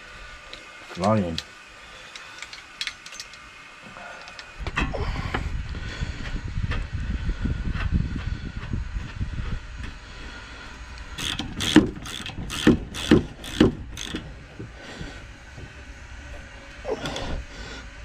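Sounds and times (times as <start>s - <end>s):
ratchet wrench clicking: 11.2s - 14.3s.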